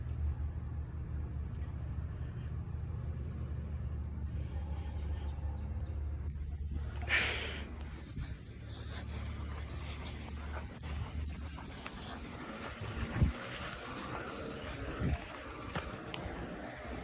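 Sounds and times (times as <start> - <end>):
air conditioner units humming: 0.0 - 17.0
noisy rush: 4.4 - 17.0.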